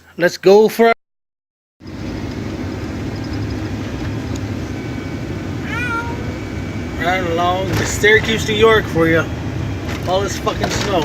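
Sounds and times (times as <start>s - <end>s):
low hum: 1.8s - 11.0s
van engine and road rumble: 1.8s - 11.0s.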